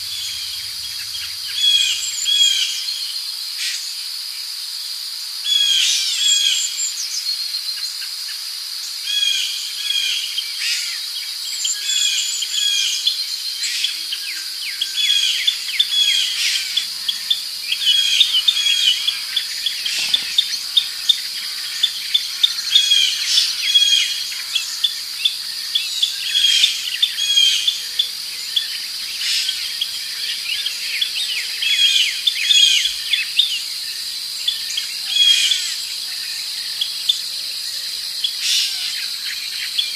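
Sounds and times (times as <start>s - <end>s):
birds chirping: 0.0s - 3.0s, 11.5s - 39.9s
insect drone: 0.0s - 39.9s.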